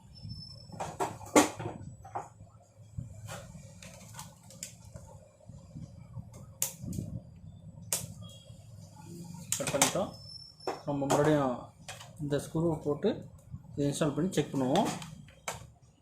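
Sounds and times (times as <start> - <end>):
steady low hum: 1.8 - 10.6.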